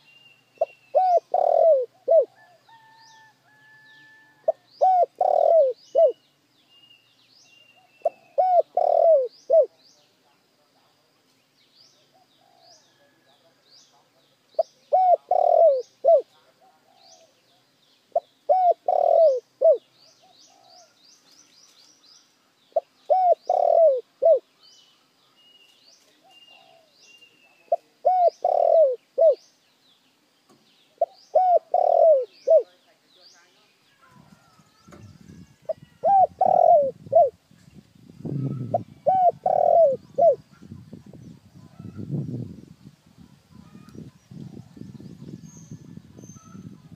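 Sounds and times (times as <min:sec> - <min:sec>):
small birds chirping: 0:00.0 - 0:46.9
dove cooing: 0:00.6 - 0:03.0, 0:04.2 - 0:06.2, 0:07.8 - 0:09.7, 0:14.6 - 0:17.3, 0:18.2 - 0:20.8, 0:22.8 - 0:24.5, 0:27.7 - 0:29.4, 0:31.0 - 0:32.8, 0:34.3 - 0:37.4, 0:38.2 - 0:40.7.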